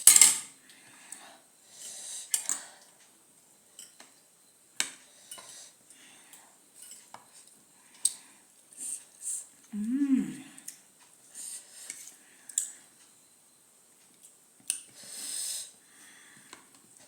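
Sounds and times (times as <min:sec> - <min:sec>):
utensils clinking against dishes: 0:00.0 - 0:00.6, 0:06.8 - 0:07.1.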